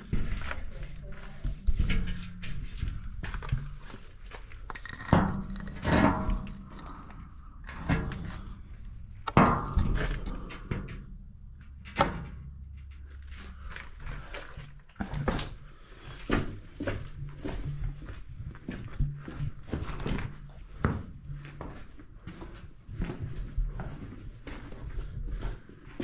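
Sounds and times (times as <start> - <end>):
low rumble: 0.0 - 14.8.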